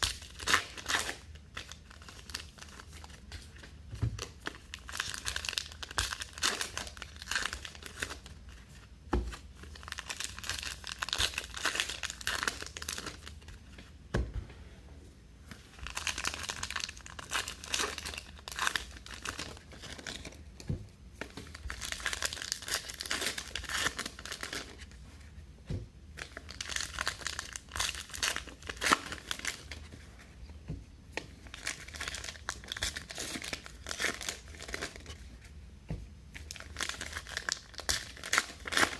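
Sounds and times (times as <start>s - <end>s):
card pack wrappers crinkling: 0.0s - 8.3s, 9.7s - 13.5s, 15.7s - 20.4s, 21.2s - 24.9s, 26.2s - 29.8s, 31.4s - 35.2s, 36.5s - 38.9s.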